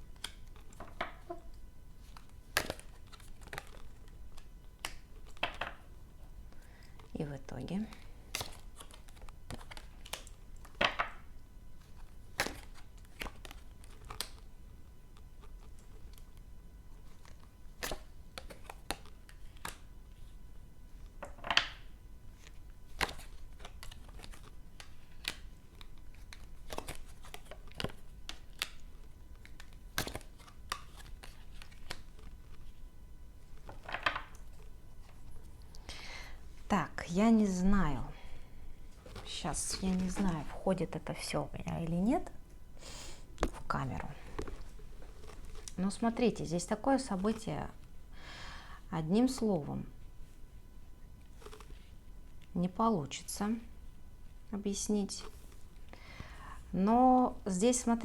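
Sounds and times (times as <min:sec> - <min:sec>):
cards slapping on table: 0:02.5 - 0:03.7.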